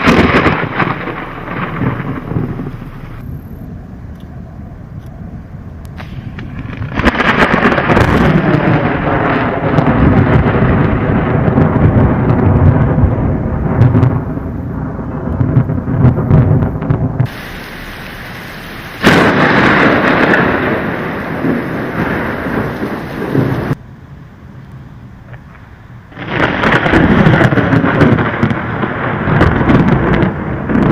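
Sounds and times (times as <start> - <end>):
sharp thunder clap: 0.0 - 3.4, 5.9 - 23.8, 26.1 - 30.9
steady rain: 0.0 - 4.2, 5.8 - 30.9
rolling thunder rumble: 0.0 - 30.9.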